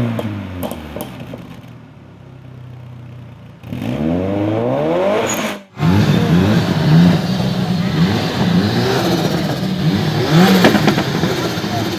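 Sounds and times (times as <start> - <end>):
car engine revving: 3.5 - 11.9.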